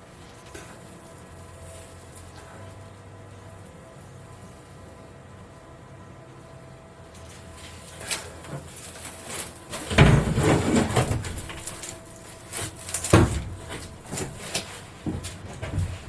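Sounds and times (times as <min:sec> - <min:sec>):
panel knocking and scraping: 0:09.7 - 0:11.9
heavy thumps: 0:09.7 - 0:16.0.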